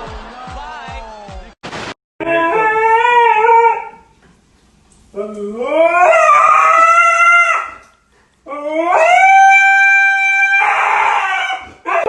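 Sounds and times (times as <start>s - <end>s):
dog howling: 2.2s - 4.0s, 5.2s - 7.8s, 8.5s - 12.0s.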